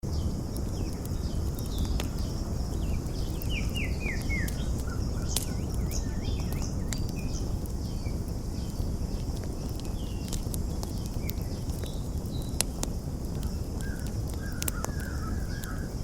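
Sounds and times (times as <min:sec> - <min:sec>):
campfire crackling and popping: 0:00.0 - 0:16.0
birds chirping: 0:00.2 - 0:12.6.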